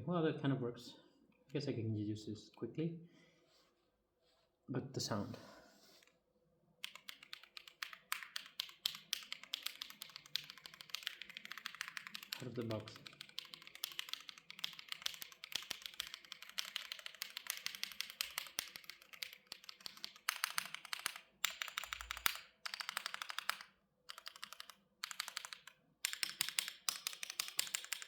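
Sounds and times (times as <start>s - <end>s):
mechanical keyboard typing: 6.8s - 28.0s.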